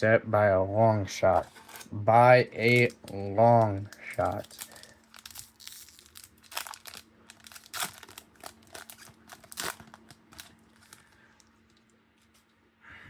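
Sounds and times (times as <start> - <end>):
foil wrapper crinkling: 1.4 - 1.9, 2.6 - 11.8
cards rustling: 2.6 - 12.4.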